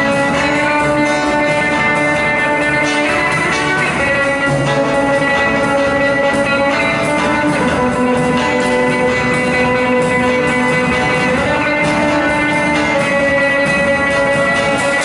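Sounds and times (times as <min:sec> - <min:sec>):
band backing: 0:00.0 - 0:15.0
guitars holding sustained notes: 0:00.0 - 0:15.0.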